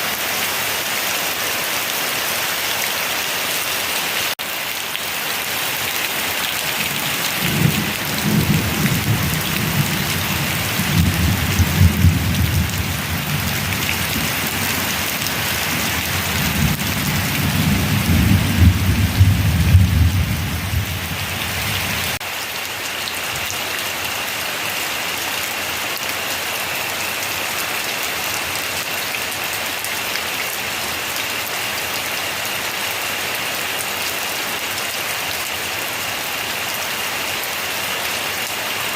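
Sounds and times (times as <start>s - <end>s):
heavy rain falling: 0.0s - 38.9s
thunder rumbling: 6.8s - 14.8s, 16.2s - 22.2s.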